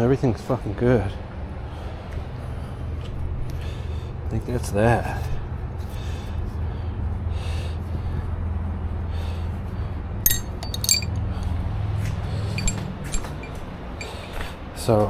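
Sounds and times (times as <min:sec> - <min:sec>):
metallic clinks of hand tools: 0:10.3 - 0:11.2, 0:12.6 - 0:14.2.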